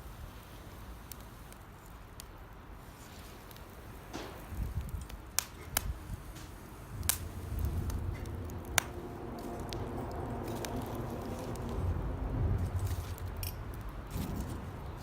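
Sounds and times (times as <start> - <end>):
campfire crackling: 0.0 - 15.0
sharp pops from fire: 0.9 - 11.8
low rumble: 6.7 - 15.0.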